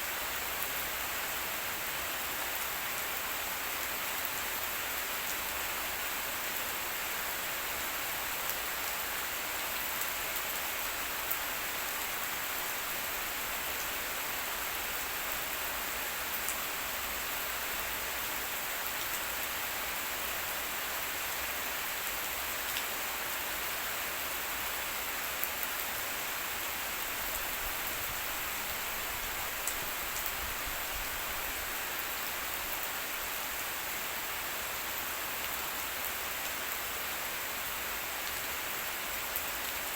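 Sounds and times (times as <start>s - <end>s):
rain pattering: 2.2s - 34.0s.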